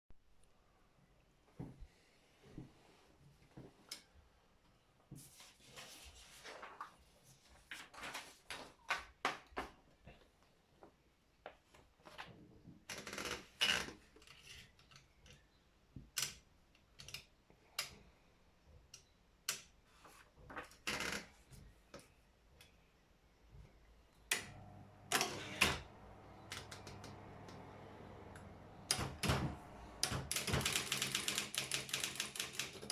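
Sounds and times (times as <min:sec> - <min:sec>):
electric typewriter key strikes: 0:25.1 - 0:32.9.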